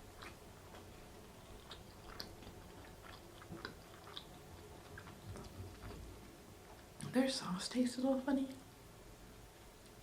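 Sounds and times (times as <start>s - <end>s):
chewing food: 0.0s - 7.1s
mouth clicks and smacks: 1.5s - 6.0s.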